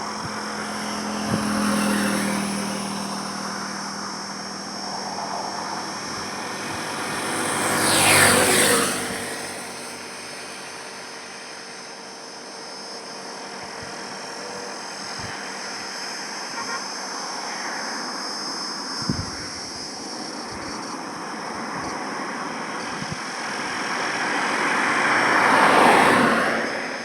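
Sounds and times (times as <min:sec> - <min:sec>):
vehicle passing close: 0:00.0 - 0:10.9, 0:24.2 - 0:27.0
highway traffic: 0:00.0 - 0:27.0.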